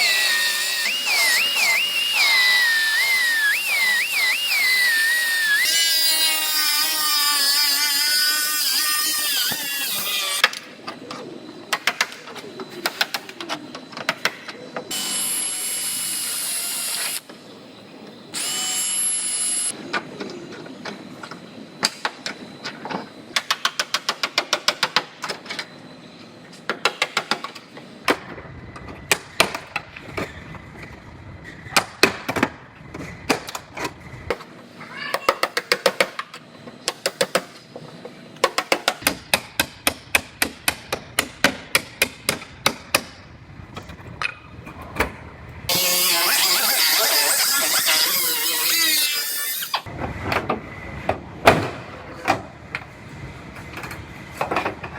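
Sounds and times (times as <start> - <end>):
high-pitched whining cutting tool: 0.0 - 10.6, 14.9 - 17.2, 18.3 - 19.8, 45.7 - 49.9.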